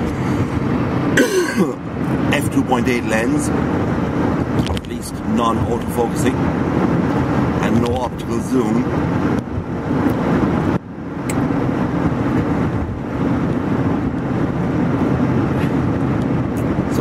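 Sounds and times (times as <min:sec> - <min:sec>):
car road and engine noise: 0:00.0 - 0:17.0.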